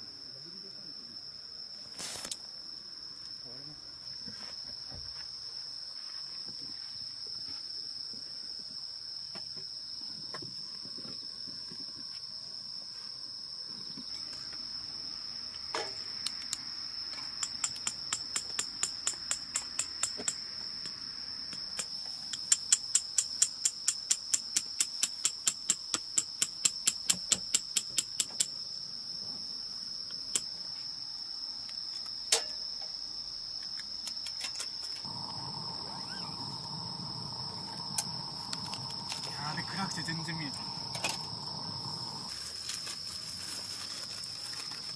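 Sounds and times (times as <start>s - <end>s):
crickets trilling: 0.0s - 44.9s
sharp evenly spaced knocks: 17.4s - 20.4s, 21.5s - 28.6s.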